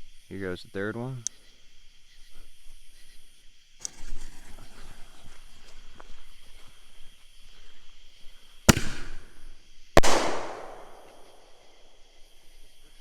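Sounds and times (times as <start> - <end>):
firework shell bursting: 3.8 - 5.5, 8.6 - 11.7
firework shell launching bang: 8.7 - 9.4, 10.0 - 11.4.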